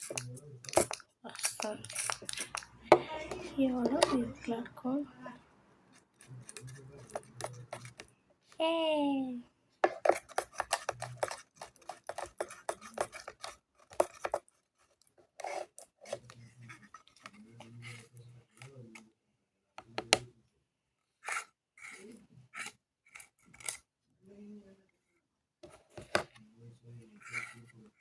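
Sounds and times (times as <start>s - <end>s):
slime being stirred: 0.0s - 8.7s, 9.8s - 19.0s, 27.1s - 27.7s.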